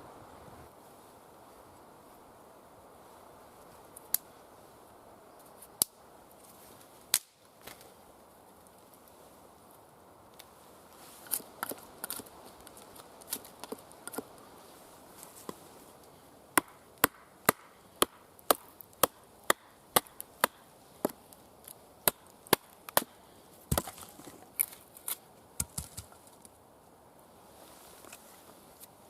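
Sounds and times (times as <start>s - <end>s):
axe chopping wood: 16.6s - 21.2s, 22.0s - 24.7s.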